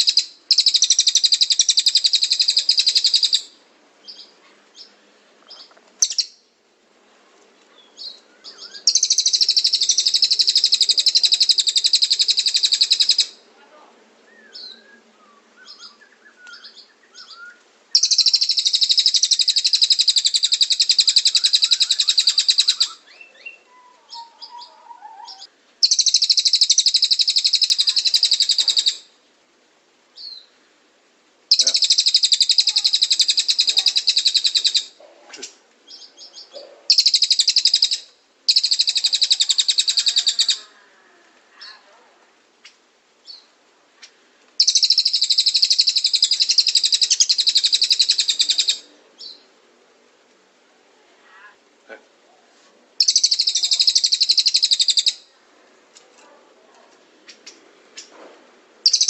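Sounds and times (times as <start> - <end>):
bird trilling: 0.0 - 3.5, 5.6 - 6.4, 8.0 - 13.4, 15.6 - 29.1, 31.5 - 40.8, 44.6 - 49.4, 53.0 - 55.3
soft bird chirps: 0.0 - 6.5, 7.6 - 13.3, 14.3 - 29.1, 31.5 - 40.6, 42.6 - 49.5, 53.0 - 55.3.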